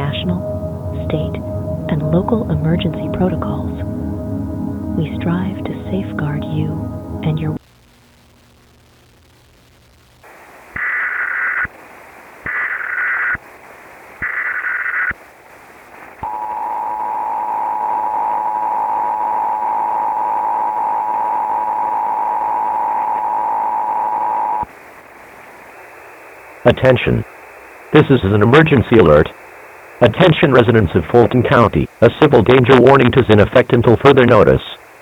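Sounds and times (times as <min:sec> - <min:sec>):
two-tone attention signal: 0:00.0 - 0:07.6
static: 0:06.2 - 0:35.0.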